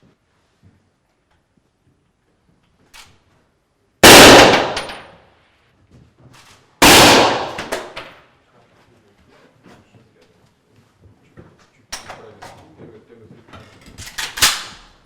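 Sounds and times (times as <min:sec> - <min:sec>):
rifle shots with echo: 0:04.0 - 0:05.2, 0:06.8 - 0:08.1.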